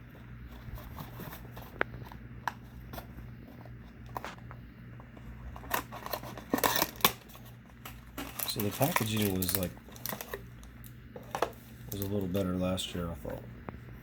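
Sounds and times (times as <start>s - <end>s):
packaging cutting and crackling: 5.2s - 12.4s.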